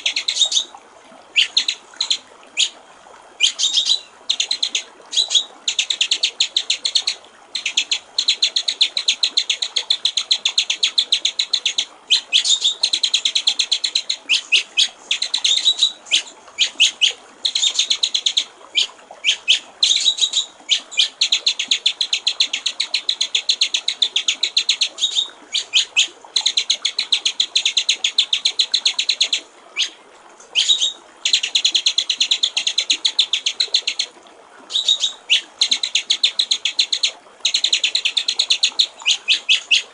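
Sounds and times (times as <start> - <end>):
bird singing rapid high chirps: 0.0 - 0.6, 1.4 - 2.8, 3.4 - 34.0, 34.7 - 39.9
faint trickle of water: 0.0 - 39.9.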